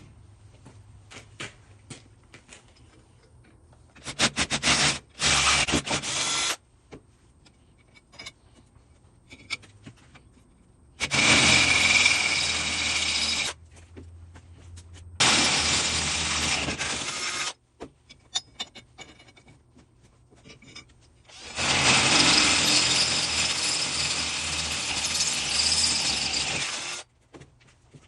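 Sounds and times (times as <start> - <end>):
power drill boring into steel: 11.0 - 13.6, 15.2 - 17.6, 21.3 - 27.0.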